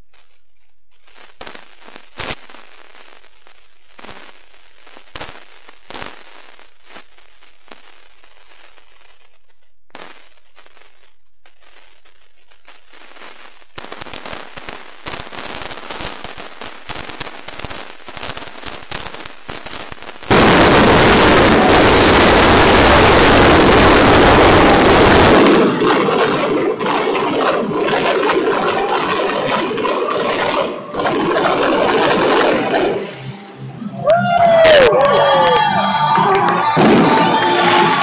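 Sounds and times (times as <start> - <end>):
fireworks crackling: 0.0 - 33.4, 34.8 - 38.0
firework bangs: 12.6 - 33.3, 36.6 - 38.0
loud rushing noise: 20.3 - 34.8.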